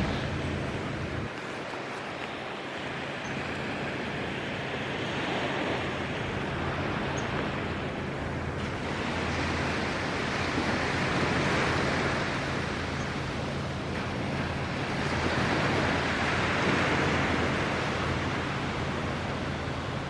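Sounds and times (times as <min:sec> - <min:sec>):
small waves washing on beach: 0:00.0 - 0:20.0
steady low hum: 0:00.0 - 0:20.0
wind noise: 0:00.0 - 0:20.0.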